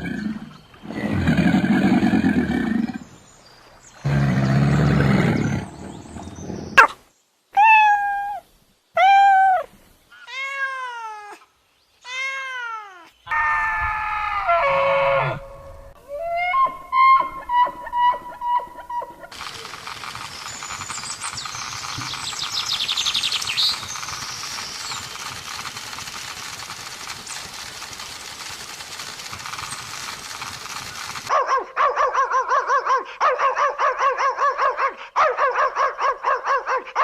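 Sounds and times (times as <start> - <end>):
animal growling: 4.0 - 6.9.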